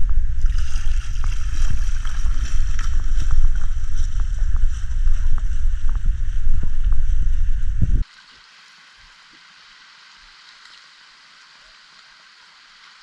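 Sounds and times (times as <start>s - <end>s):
wind buffeting the microphone: 0.0s - 8.0s
sea wash hiss: 8.0s - 13.0s.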